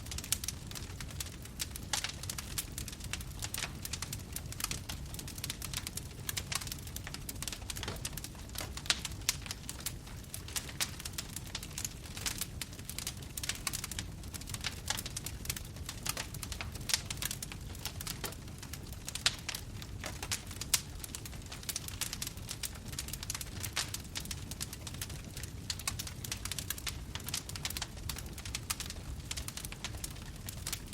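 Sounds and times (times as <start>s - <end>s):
fire crackling and popping: 0.0s - 30.9s.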